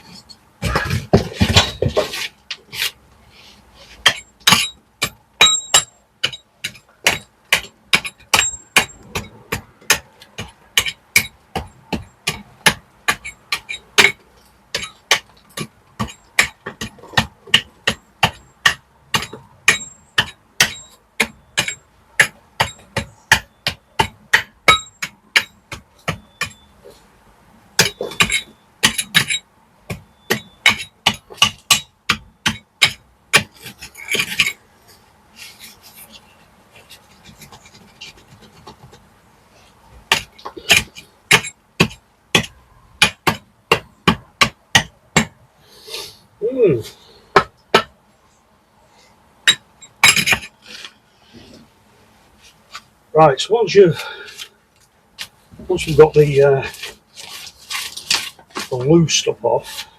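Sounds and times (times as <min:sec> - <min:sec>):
hammer striking steel chisel: 0:04.0 - 0:26.7, 0:27.8 - 0:34.6, 0:40.1 - 0:45.4, 0:49.4 - 0:50.5.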